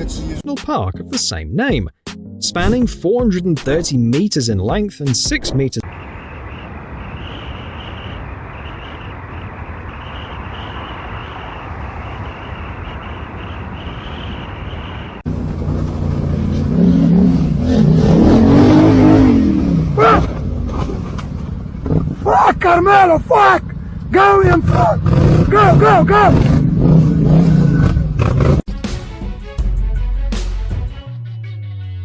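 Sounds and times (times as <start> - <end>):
steady rushing noise: 5.1 - 20.0
car engine revving: 5.8 - 28.7.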